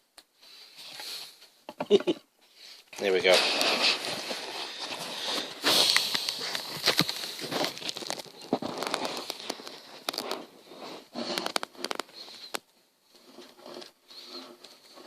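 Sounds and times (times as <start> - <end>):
plastic figure clicks and rustles: 3.0 - 10.5, 11.2 - 12.7.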